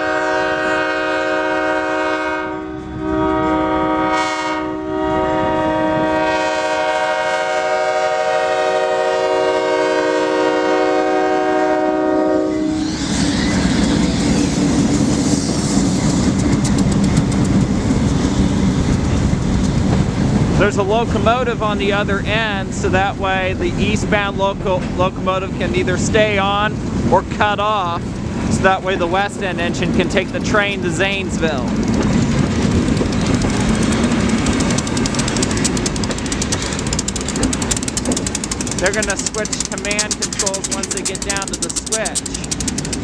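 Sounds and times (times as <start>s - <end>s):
locomotive air horn: 0.0s - 12.8s
train engine rumbling: 0.0s - 43.0s
wheels clicking over rail joints: 12.8s - 43.0s.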